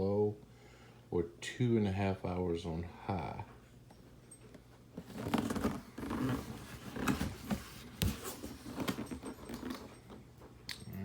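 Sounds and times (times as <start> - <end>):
cardboard box rustling: 5.0 - 10.2.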